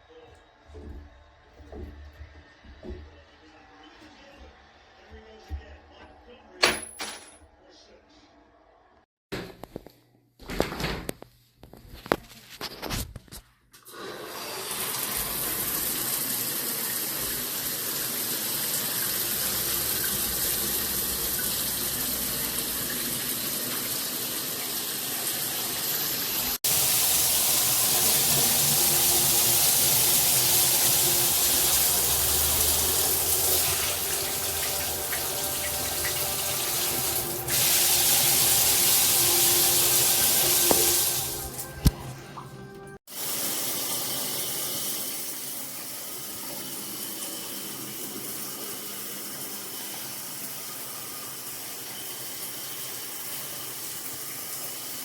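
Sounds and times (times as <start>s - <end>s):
shower spraying water: 13.9s - 55.0s.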